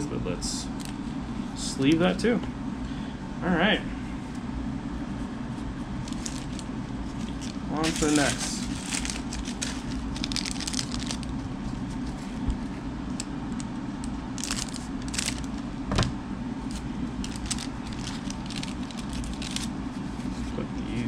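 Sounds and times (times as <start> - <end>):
low background hum: 0.0 - 21.0
cards crinkling: 6.0 - 15.6, 16.7 - 20.4.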